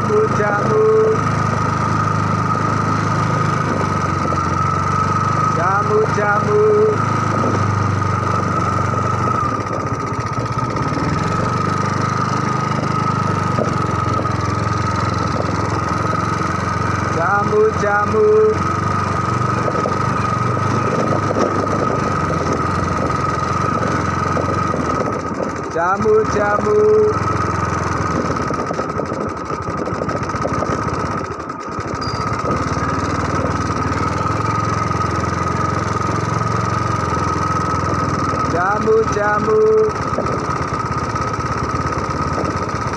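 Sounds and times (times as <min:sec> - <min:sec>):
motorbike engine running: 0:00.0 - 0:42.9.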